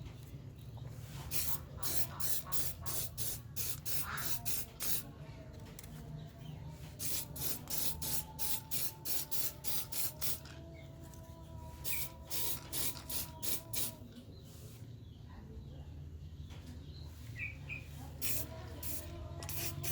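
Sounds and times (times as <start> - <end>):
sandpaper rubbing on plastic: 1.2 - 5.0, 18.3 - 19.9.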